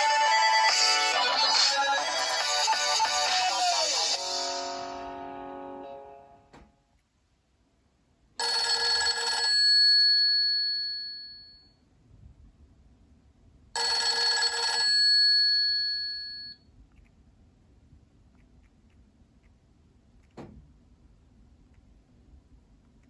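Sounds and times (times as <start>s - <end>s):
telephone bell ringtone: 8.4s - 11.7s, 13.8s - 16.6s.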